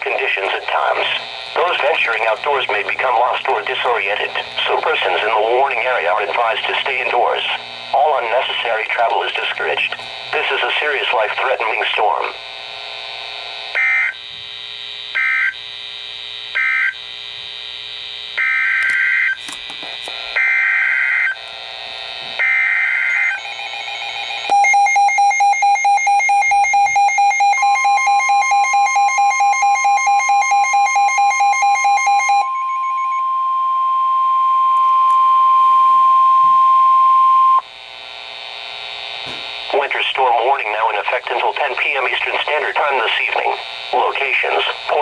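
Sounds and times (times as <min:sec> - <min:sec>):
steady high warning tone: 0:00.0 - 0:45.0.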